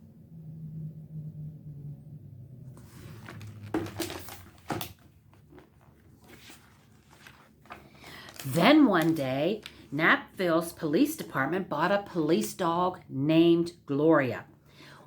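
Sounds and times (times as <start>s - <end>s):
low hum: 0.0s - 4.4s
book page turning: 2.7s - 9.8s.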